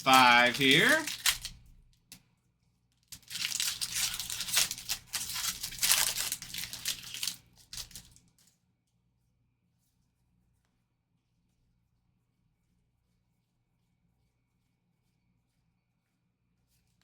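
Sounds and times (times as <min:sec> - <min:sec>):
wrapper tearing and crinkling: 0:00.0 - 0:01.6, 0:03.1 - 0:08.2.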